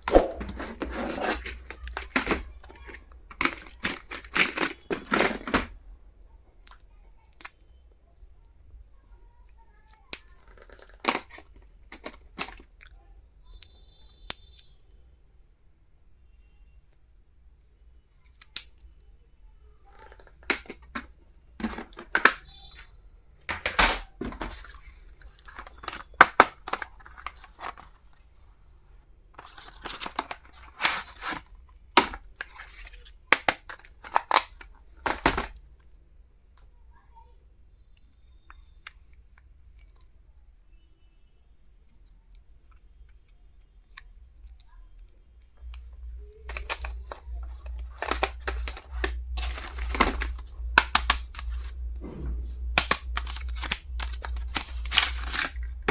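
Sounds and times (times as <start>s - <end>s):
packaging clicking: 0.0s - 5.8s, 10.1s - 12.8s, 20.0s - 22.6s, 23.5s - 28.0s, 29.4s - 35.6s, 45.6s - 51.8s, 52.7s - 55.9s
packaging crinkling and tearing: 0.0s - 5.8s, 10.1s - 12.8s, 23.6s - 28.2s, 29.4s - 35.6s, 45.6s - 51.9s, 52.6s - 55.9s.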